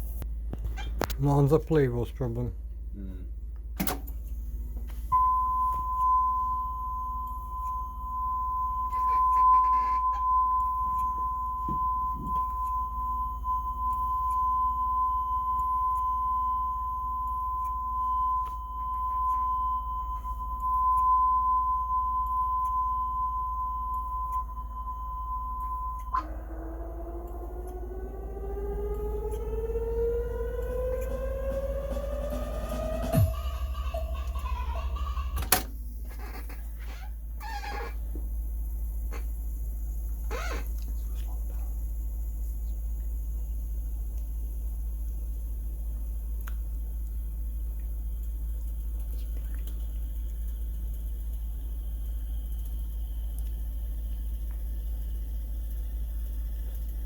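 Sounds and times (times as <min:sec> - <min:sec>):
low steady hum: 0:00.0 - 0:57.0
steady test tone: 0:05.1 - 0:35.5
tone rising in pitch: 0:05.2 - 0:35.4.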